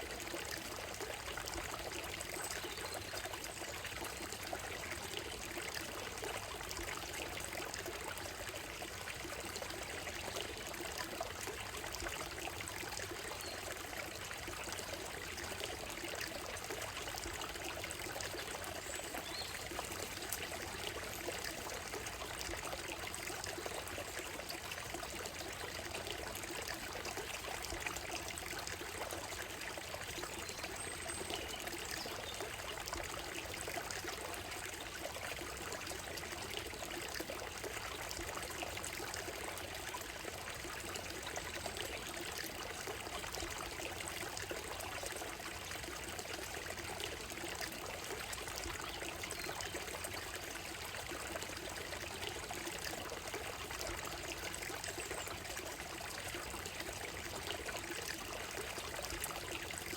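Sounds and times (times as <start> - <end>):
stream trickling over stones: 0.0 - 59.9.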